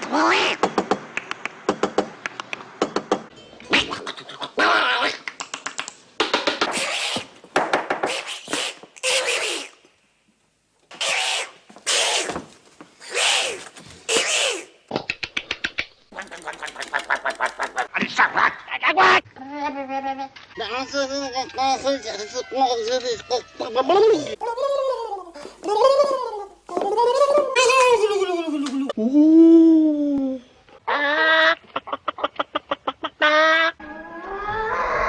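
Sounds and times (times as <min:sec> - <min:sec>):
hissing sputtering vocal bursts: 0:06.7 - 0:07.3, 0:08.0 - 0:09.8, 0:10.9 - 0:12.4, 0:13.0 - 0:14.8
man making tongue clicks: 0:14.1 - 0:17.8.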